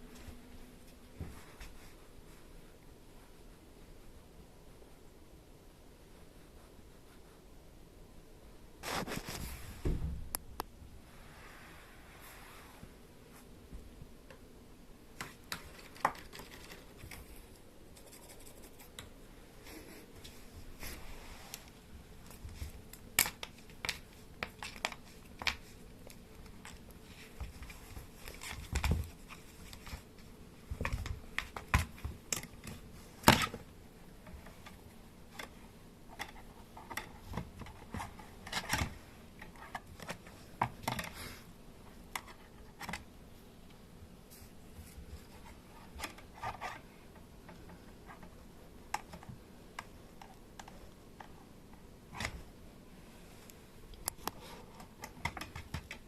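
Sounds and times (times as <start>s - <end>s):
kittens clicking and scratching: 15.2s - 19.2s, 21.6s - 43.1s, 44.8s - 51.4s, 54.0s - 56.0s.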